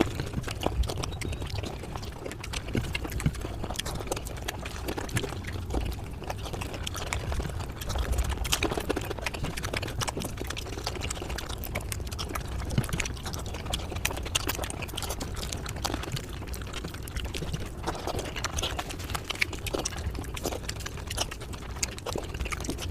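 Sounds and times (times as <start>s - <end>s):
sped-up wet chewing and slurping: 0.0s - 22.9s.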